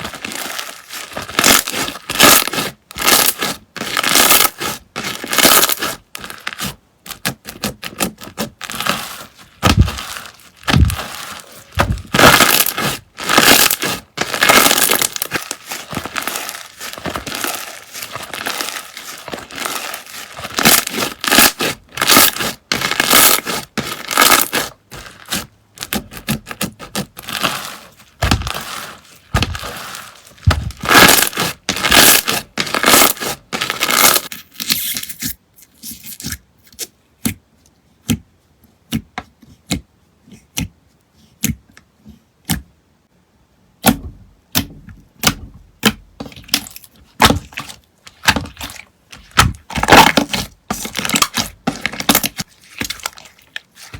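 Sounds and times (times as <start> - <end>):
slime crackling and popping: 0.0 - 6.7, 8.7 - 34.9, 45.2 - 53.9.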